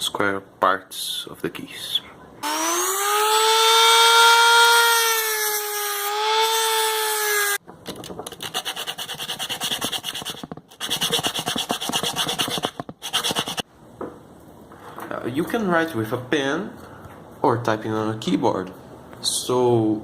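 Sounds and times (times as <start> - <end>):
small high-speed motor tool whining: 2.4 - 7.6
hand filing scraping strokes: 8.3 - 13.6.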